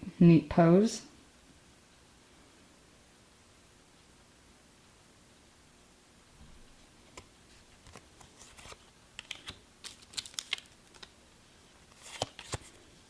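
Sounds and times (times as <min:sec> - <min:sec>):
cards rustling: 0:07.1 - 0:11.2, 0:11.8 - 0:12.9
trading cards clicking: 0:08.6 - 0:11.1.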